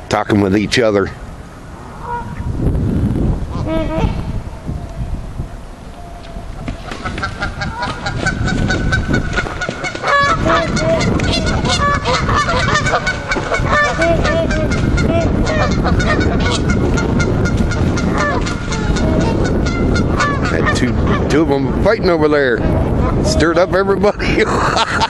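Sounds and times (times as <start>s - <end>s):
geese honking: 1.9s - 2.5s, 3.5s - 4.4s, 6.5s - 21.4s.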